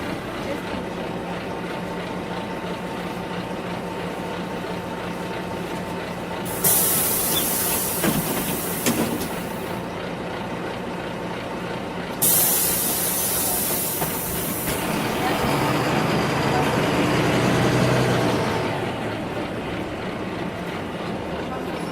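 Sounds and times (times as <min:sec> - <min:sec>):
bus engine hum: 0:00.0 - 0:21.9
pneumatic air hiss: 0:06.5 - 0:09.6, 0:12.2 - 0:14.8.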